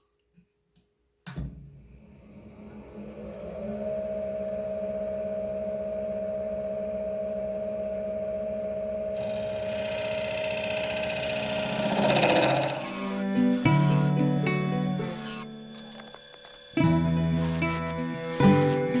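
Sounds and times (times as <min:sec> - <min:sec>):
wood lathe motor whine: 0:02.6 - 0:19.0
turning tool cutting wood hiss: 0:09.2 - 0:14.2.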